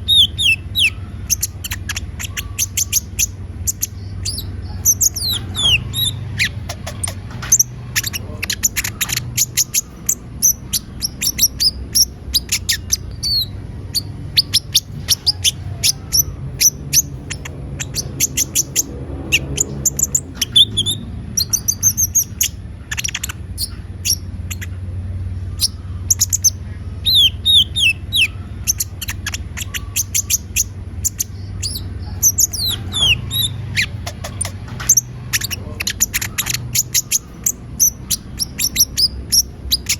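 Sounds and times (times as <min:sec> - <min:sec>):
bird chirping: 0:00.0 - 0:39.9.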